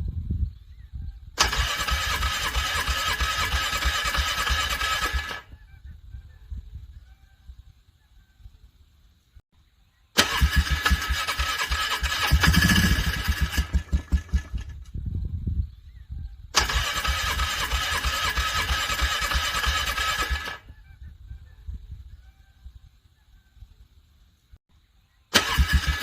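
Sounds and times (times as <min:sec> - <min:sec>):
engine cranked by starter: 0:01.4 - 0:05.5, 0:10.2 - 0:15.0, 0:16.6 - 0:20.6, 0:25.3 - 0:26.0.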